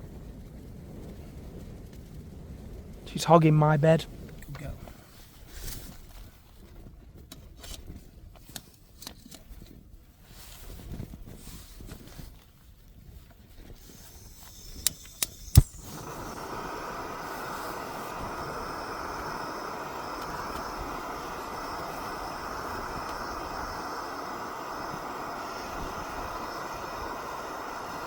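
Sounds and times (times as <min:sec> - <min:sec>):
gas burner hissing: 0:00.9 - 0:06.0, 0:13.7 - 0:28.0
rustling handling stove: 0:04.5 - 0:27.8
igniter clicks: 0:14.0 - 0:28.0.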